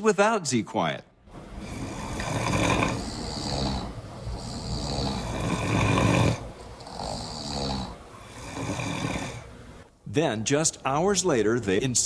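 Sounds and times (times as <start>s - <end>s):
heavy snoring: 1.4s - 9.9s.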